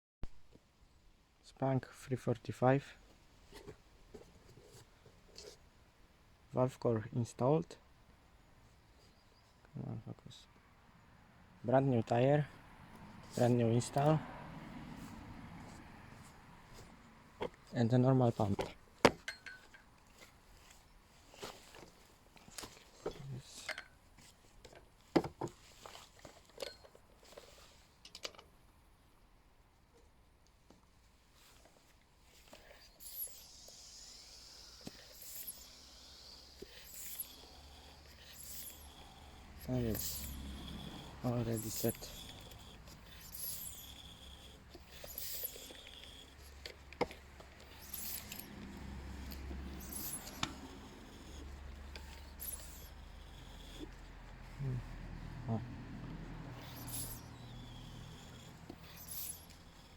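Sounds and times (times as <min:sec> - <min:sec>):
squeaky pump strokes: 0:13.2 - 0:24.4, 0:31.4 - 0:59.9
tyre inflation hissing: 0:32.5 - 0:59.9.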